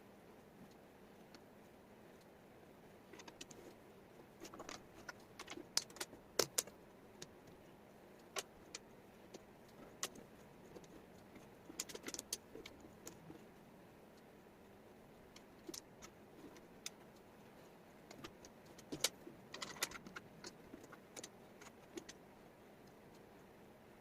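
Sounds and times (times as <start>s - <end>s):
wooden puzzle pieces clicking: 3.2s - 3.6s, 4.4s - 7.3s, 11.7s - 13.3s, 18.1s - 22.2s.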